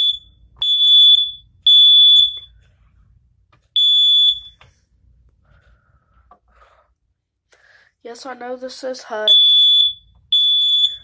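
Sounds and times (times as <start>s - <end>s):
smoke alarm beeping: 0.0s - 2.6s, 3.8s - 4.6s, 9.3s - 11.0s.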